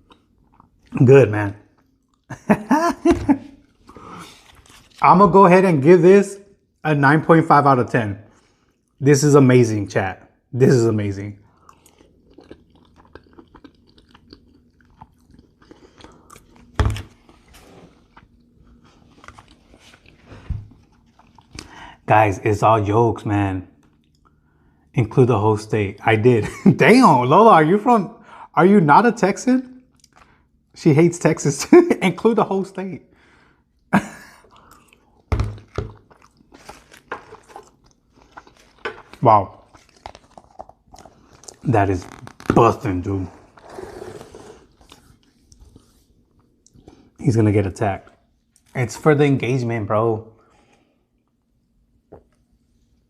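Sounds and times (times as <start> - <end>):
close-up chewing: 0.0 - 1.0, 1.7 - 2.3, 11.4 - 21.8, 23.8 - 24.6, 29.8 - 30.7, 33.7 - 42.3, 44.6 - 47.2.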